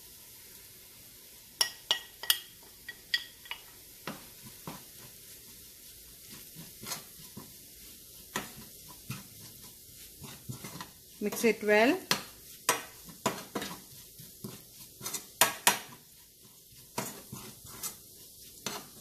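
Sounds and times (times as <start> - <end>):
faint frying sizzle: 0.0 - 19.0
metal utensil tapping a frying pan: 1.6 - 4.8, 10.6 - 13.8, 15.0 - 16.0
utensil scraping through spice: 4.1 - 19.0.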